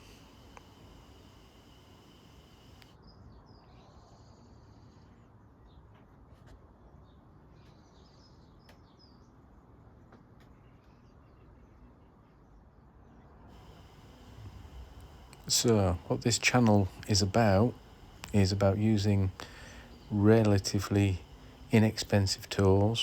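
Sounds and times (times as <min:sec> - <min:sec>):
faint bird chirps: 0:13.6 - 0:23.0.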